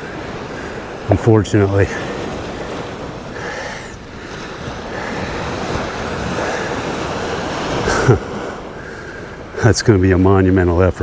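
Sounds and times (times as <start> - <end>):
surf washing on a beach: 0.0 - 11.0
wind buffeting microphone: 0.0 - 11.0.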